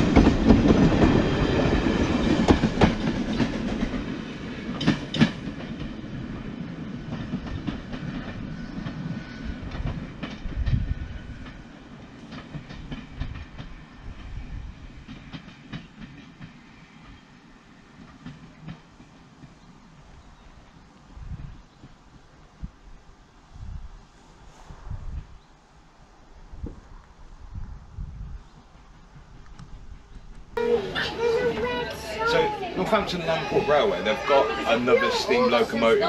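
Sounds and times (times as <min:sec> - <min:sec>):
train wheels clicking over rail joints: 0:00.0 - 0:20.1
low train rumble: 0:00.0 - 0:36.0.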